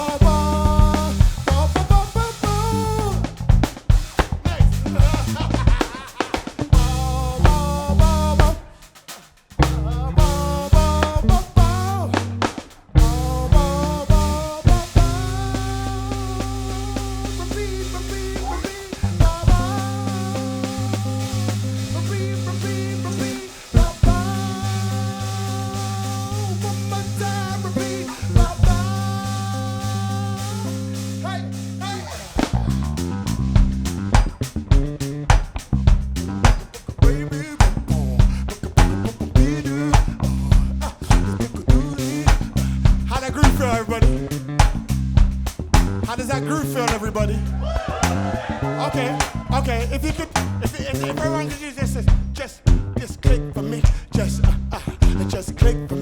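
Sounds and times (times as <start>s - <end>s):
drum kit groove: 0.0s - 48.4s, 49.1s - 56.0s
bass line: 0.0s - 56.0s
guitar: 0.0s - 56.0s
live band playing: 10.2s - 35.6s
person singing long notes: 13.0s - 32.3s.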